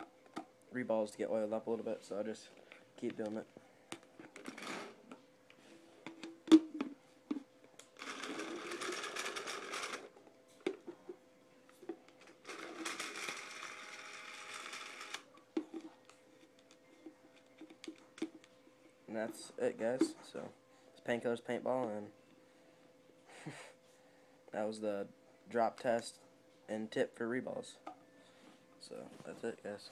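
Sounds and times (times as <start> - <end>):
balls clicking and clattering: 6.0 - 11.2, 11.8 - 13.9.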